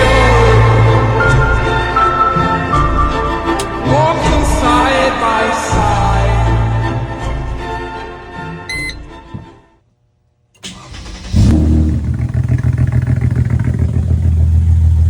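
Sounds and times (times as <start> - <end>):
music: 0.0 - 9.8
car engine starting and running: 3.6 - 5.8, 10.6 - 15.0.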